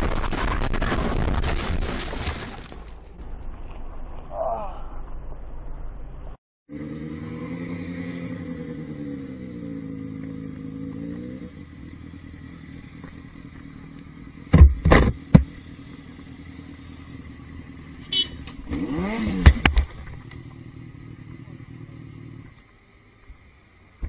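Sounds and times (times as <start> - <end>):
vehicle engine running: 5.5 - 24.0.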